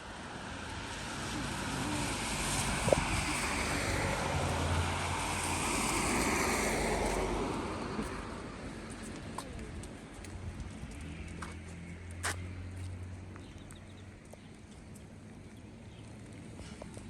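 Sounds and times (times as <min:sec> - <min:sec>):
vehicle engine rumble: 0:00.0 - 0:17.0
tyres hissing on wet road: 0:00.2 - 0:08.6.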